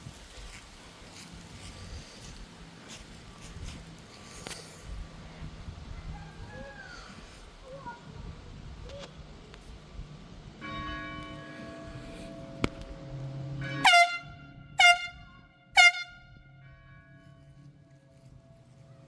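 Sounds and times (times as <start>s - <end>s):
air horn blasts: 13.6s - 17.0s.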